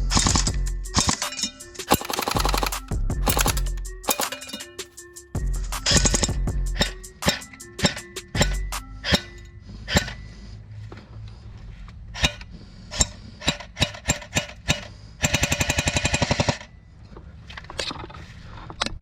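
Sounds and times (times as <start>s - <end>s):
airsoft gun full-auto burst: 1.9s - 4.4s.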